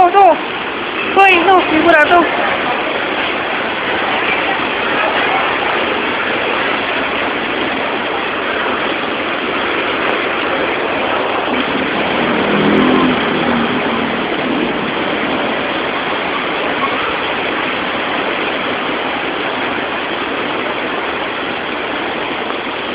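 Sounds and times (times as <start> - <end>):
heavy rain pouring: 0.0 - 22.9
low droning sound: 8.7 - 18.4.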